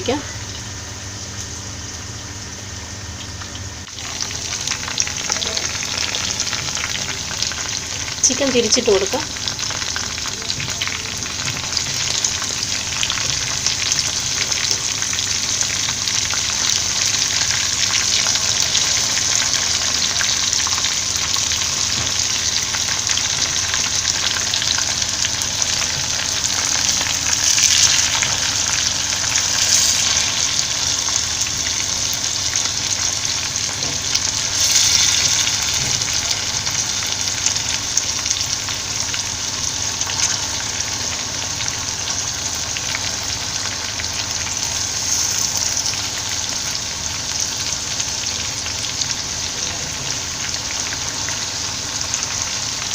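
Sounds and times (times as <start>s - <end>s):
chicken sizzling in hot oil: 0.0s - 52.9s.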